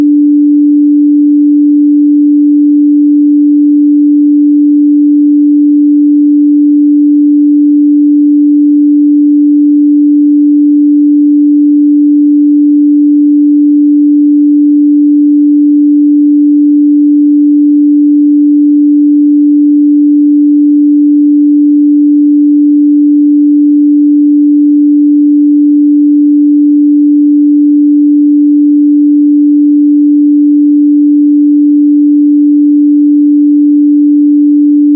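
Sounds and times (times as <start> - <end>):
sine-wave test tone: 0.0 - 34.9.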